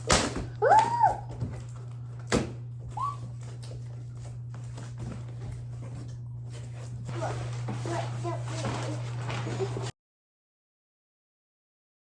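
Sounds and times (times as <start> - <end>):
dog whining: 0.6 - 1.4, 2.9 - 3.4.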